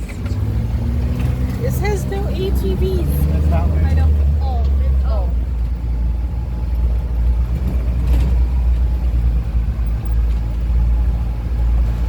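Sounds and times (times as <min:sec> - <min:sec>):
atv engine running: 0:00.0 - 0:12.0.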